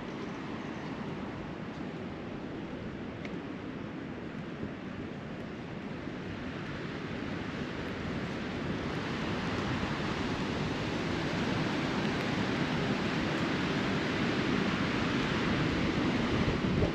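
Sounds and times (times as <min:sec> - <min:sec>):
storm wind rushing: 0:08.8 - 0:16.9.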